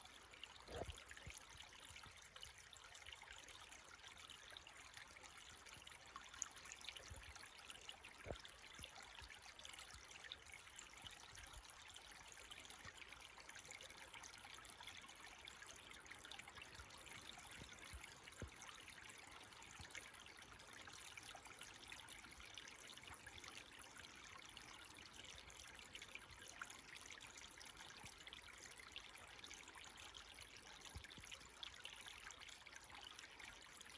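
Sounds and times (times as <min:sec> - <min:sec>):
creek water trickling: 0:00.0 - 0:33.9.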